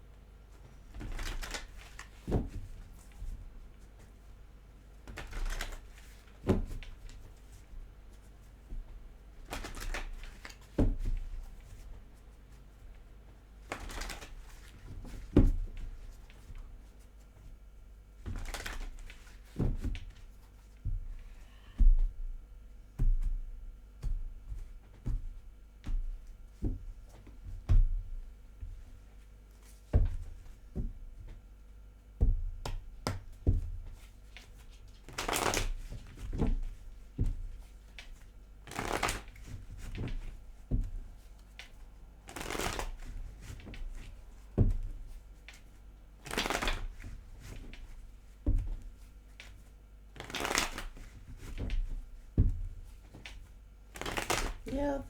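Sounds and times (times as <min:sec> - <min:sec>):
cards rustling while shuffled: 0:05.1 - 0:06.2, 0:09.4 - 0:10.7, 0:41.5 - 0:44.0, 0:46.3 - 0:46.9, 0:50.2 - 0:51.8, 0:54.0 - 0:55.0.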